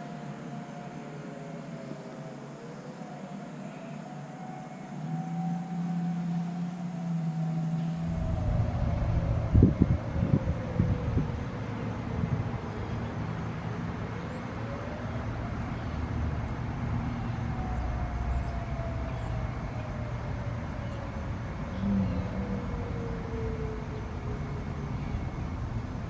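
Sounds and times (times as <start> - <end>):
faint wailing warning siren: 0.0 - 26.0
low rumble: 5.3 - 13.1.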